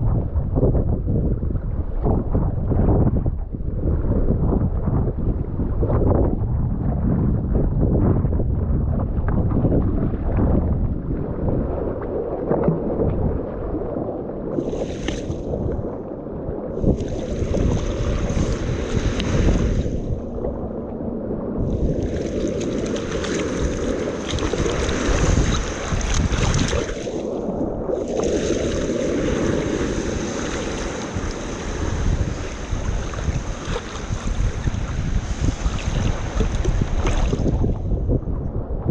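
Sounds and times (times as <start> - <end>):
wind buffeting microphone: 0.0 - 38.9
waves splashing around kayak: 9.4 - 38.8.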